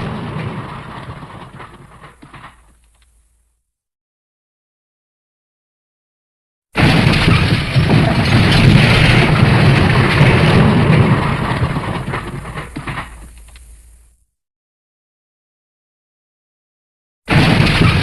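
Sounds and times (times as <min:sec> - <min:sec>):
loud rumbling crash: 0:00.0 - 0:02.8, 0:06.8 - 0:13.4, 0:17.3 - 0:18.0
crackling debris: 0:00.0 - 0:03.6, 0:06.8 - 0:14.2, 0:17.3 - 0:18.0.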